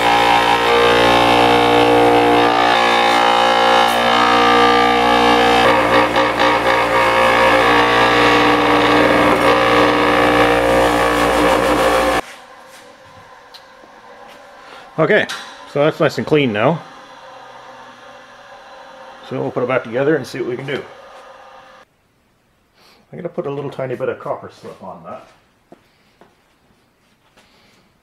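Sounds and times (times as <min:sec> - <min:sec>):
powered wire brush wheel scrubbing metal: 0:00.0 - 0:21.8.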